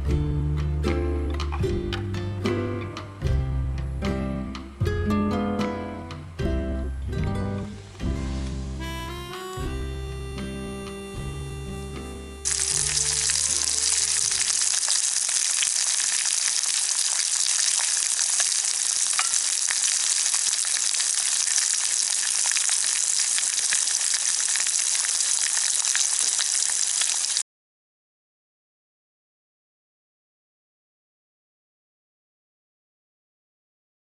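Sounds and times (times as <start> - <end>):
music: 0.0 - 14.5
dense crackling hiss: 10.2 - 27.4.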